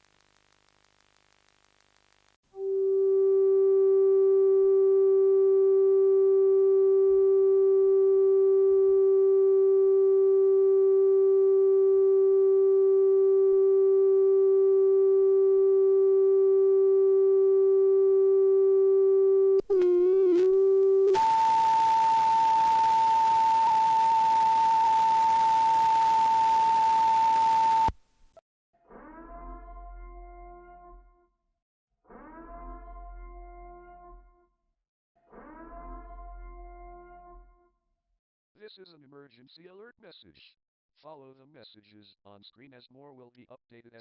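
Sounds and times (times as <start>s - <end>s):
loud static hiss: 0.0s - 2.4s
low steady electronic tone: 0.0s - 27.9s
higher steady tone: 2.6s - 27.9s.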